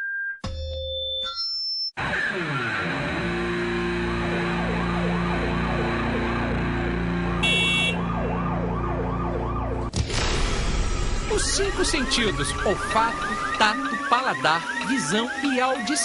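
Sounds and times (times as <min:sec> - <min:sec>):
emergency siren yelping: 0:02.0 - 0:09.9, 0:11.3 - 0:16.0.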